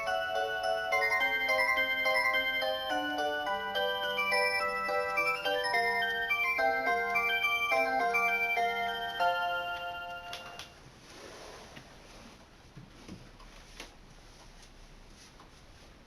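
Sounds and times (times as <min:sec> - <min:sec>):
electronic chime-like melody: 0:00.0 - 0:10.6.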